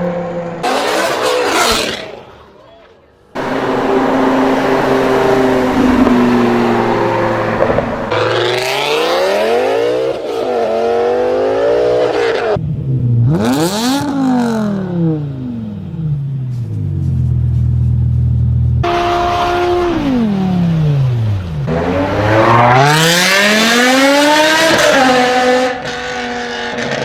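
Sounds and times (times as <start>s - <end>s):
loud rushing noise: 3.4s - 8.9s
car engine revving: 3.4s - 12.5s, 18.8s - 27.0s.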